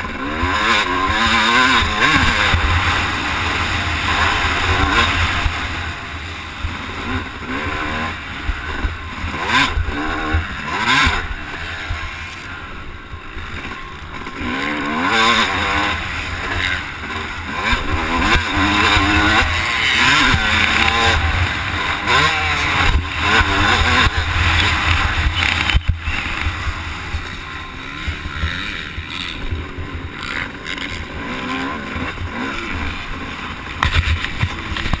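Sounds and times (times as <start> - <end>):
motocross bike engine revving: 0.0 - 35.0.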